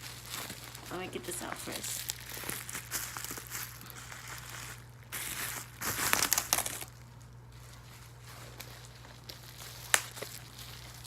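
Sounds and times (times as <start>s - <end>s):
packaging crinkling and rustling: 0.0s - 11.0s.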